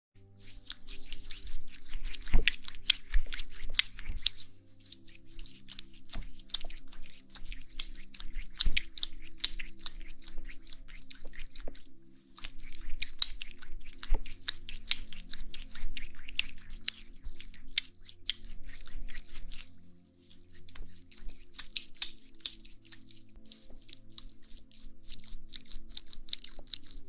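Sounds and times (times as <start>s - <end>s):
wet sticky gel squishes: 0.2s - 27.0s.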